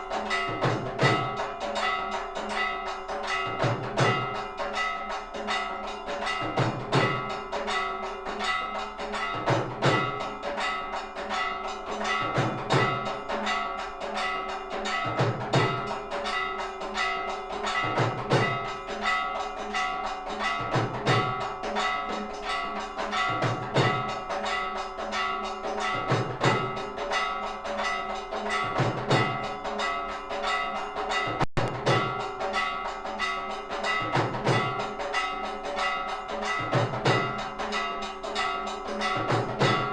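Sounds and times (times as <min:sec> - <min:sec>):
bells clanging rapidly: 0:00.0 - 0:39.9.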